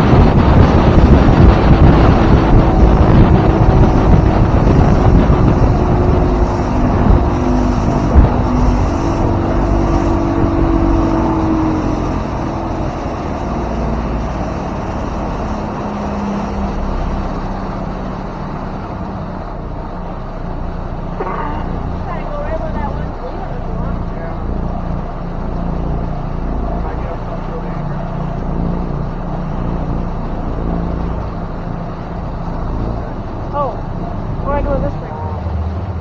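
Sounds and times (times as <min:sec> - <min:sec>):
wind on microphone: 0:00.0 - 0:18.2
motorboat engine: 0:00.0 - 0:36.0
water rushing past hull: 0:00.0 - 0:36.0.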